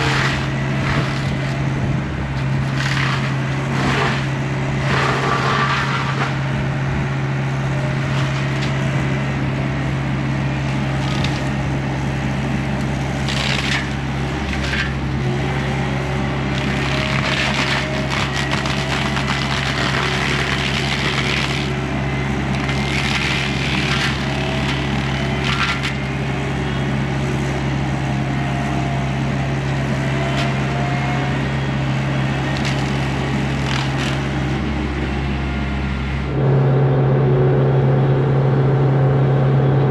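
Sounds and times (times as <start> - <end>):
wood crackling and splintering: 0.0 - 6.6, 7.9 - 35.2
mini excavator running: 0.0 - 39.9
mulcher head chewing brush: 7.8 - 35.4.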